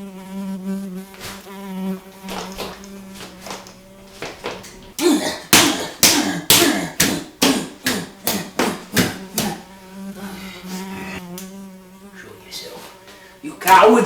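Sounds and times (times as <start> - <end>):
housefly buzzing: 0.0 - 14.0
hard whacks of fly swatting: 0.6 - 11.7, 12.5 - 14.0.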